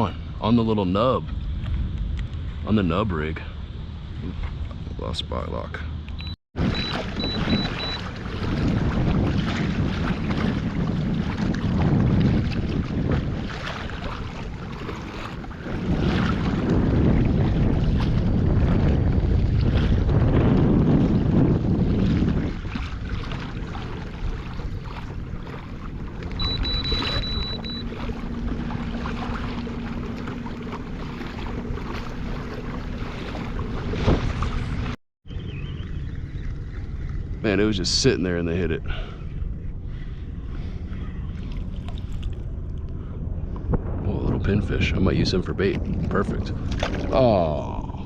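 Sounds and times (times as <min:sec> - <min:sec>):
water lapping and splashing: 0:00.0 - 0:48.0
wind buffeting microphone: 0:00.0 - 0:48.0
knock or splash: 0:29.0 - 0:34.9.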